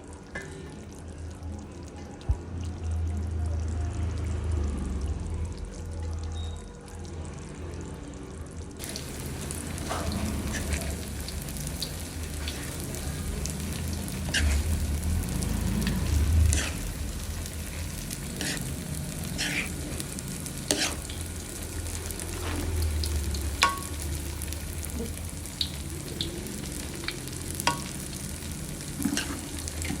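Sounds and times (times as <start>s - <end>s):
low rumble: 8.8s - 20.6s
food sizzling in a pot: 8.8s - 30.0s.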